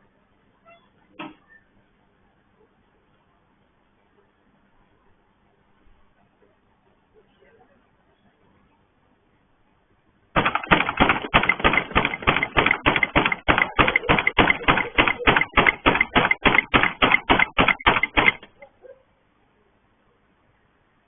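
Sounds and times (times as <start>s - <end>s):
rapid banging on a gate: 10.4s - 18.6s.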